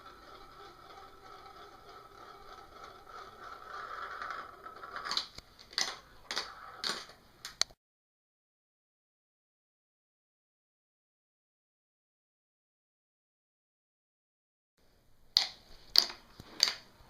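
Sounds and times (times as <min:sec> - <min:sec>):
marbles clacking: 0:00.0 - 0:07.2
marbles rolling on a track: 0:00.0 - 0:07.2.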